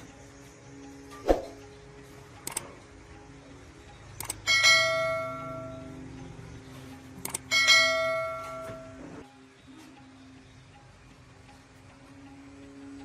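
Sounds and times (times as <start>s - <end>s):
small metallic clicks: 2.4s - 2.8s, 4.2s - 4.5s, 7.2s - 7.5s
metal part ringing like a bell: 4.5s - 6.0s, 7.5s - 9.1s.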